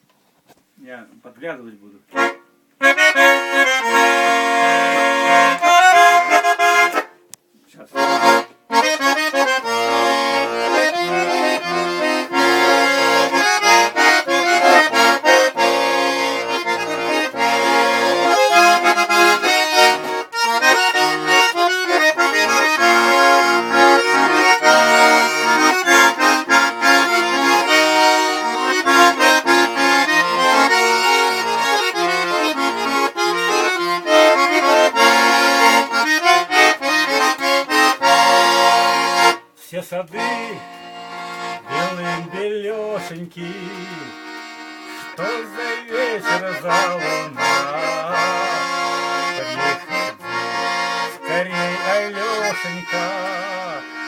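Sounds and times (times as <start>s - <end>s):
accordion playing: 2.1s - 54.0s.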